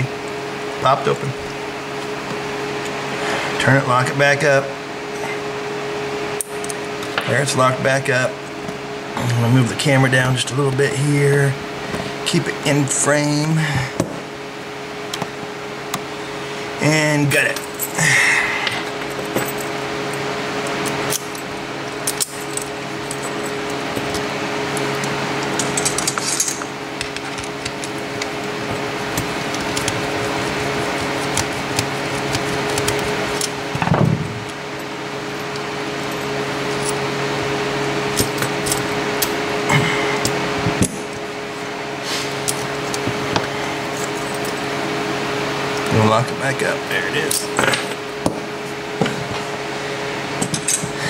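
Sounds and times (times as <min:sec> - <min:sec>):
steady hum: 0:00.0 - 0:51.0
lock picks clicking and scraping: 0:22.0 - 0:33.6.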